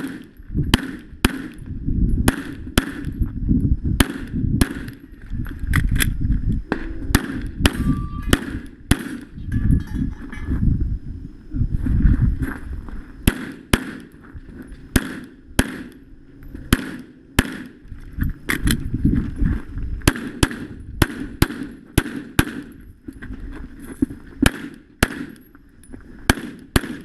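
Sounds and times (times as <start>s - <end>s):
pistol shots: 0.0s - 1.6s, 2.2s - 3.1s, 4.0s - 5.0s, 6.7s - 9.3s, 13.2s - 14.2s, 14.9s - 16.0s, 16.7s - 17.8s, 20.0s - 22.8s, 24.4s - 25.4s, 26.3s - 27.0s.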